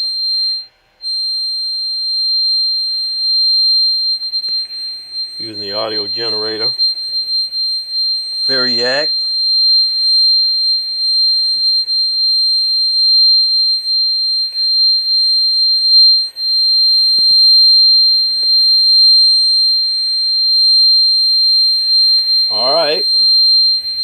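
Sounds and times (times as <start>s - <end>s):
high-pitched test tone: 3.8s - 10.0s, 15.7s - 24.0s.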